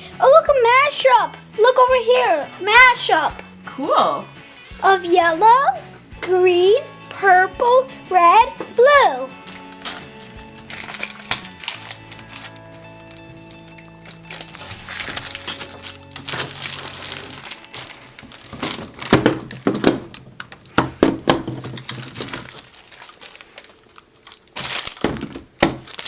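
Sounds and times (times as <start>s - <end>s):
light background music: 0.0s - 26.0s
plastic packaging crinkling: 9.4s - 26.0s.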